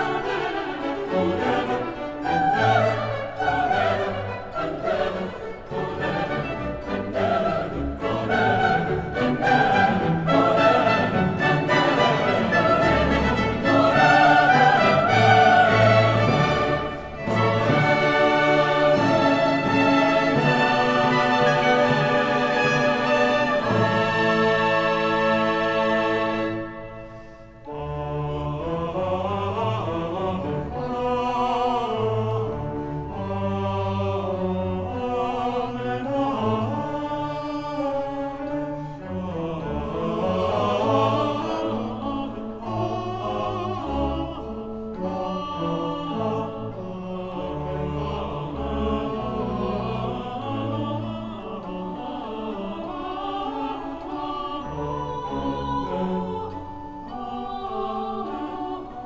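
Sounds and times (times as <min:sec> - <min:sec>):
choir with orchestra: 0:00.0 - 0:59.0.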